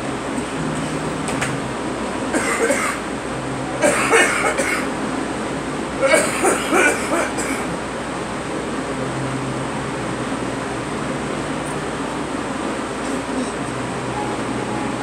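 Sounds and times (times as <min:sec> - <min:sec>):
steady low hum: 0:00.0 - 0:15.0
girl coughing: 0:02.4 - 0:03.0, 0:03.8 - 0:04.9, 0:06.0 - 0:07.7.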